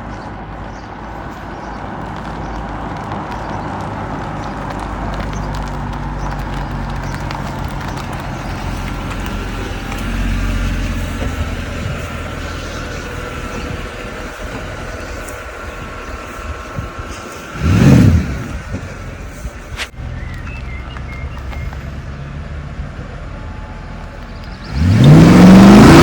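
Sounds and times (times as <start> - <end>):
car engine idling with burble: 0.0 - 26.0
engine revving sharply: 6.3 - 23.0, 24.4 - 26.0.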